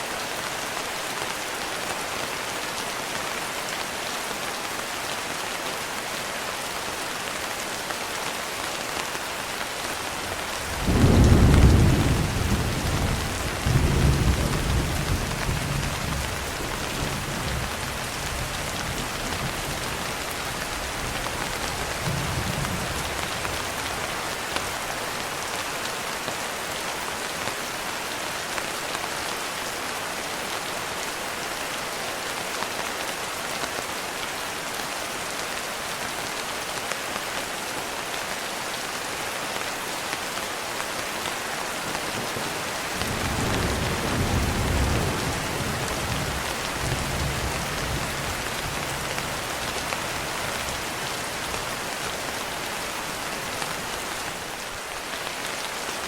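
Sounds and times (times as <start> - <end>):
steady rain falling: 0.0 - 56.0
distant thunder rumble: 10.8 - 16.3.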